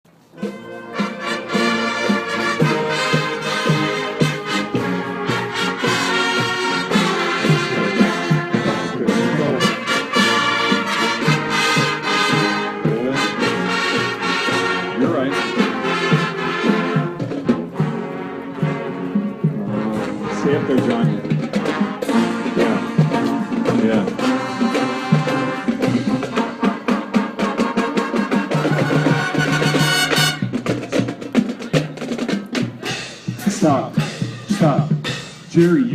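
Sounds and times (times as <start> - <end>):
wind instruments sustained chords: 0.1 - 30.5
drum strokes: 0.1 - 35.9
marching band playing: 0.1 - 35.9.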